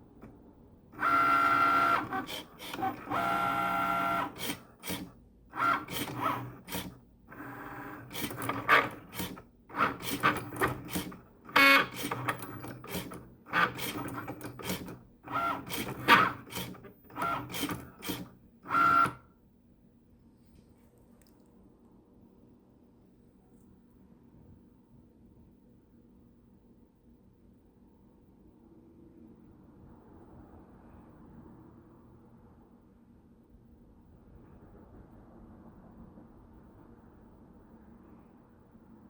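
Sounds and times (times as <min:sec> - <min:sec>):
cutting machine motor whirring: 0:01.0 - 0:19.2
loud machine clicks: 0:01.0 - 0:19.2.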